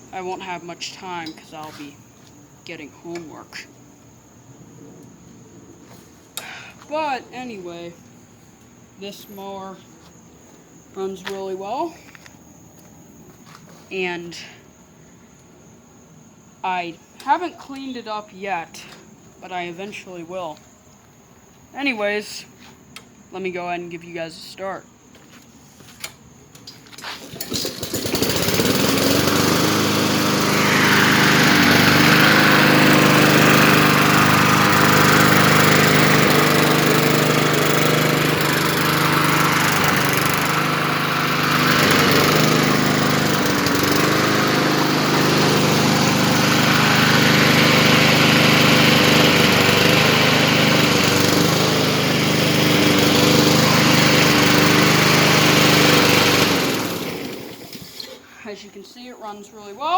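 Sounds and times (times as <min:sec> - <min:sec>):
lawn mower pull-started: 0:25.9 - 0:58.4
lawn mower engine running: 0:26.6 - 0:58.6.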